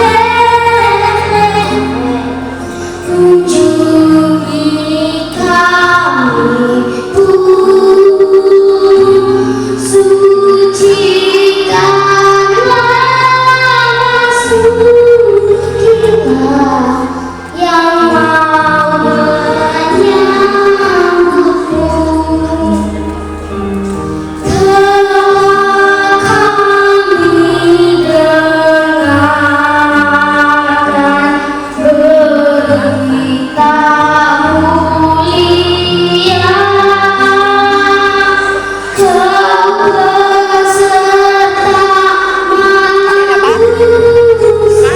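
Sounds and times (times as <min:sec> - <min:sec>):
child singing: 0:00.0 - 0:23.1, 0:24.4 - 0:44.9
instrumental accompaniment: 0:00.0 - 0:44.9.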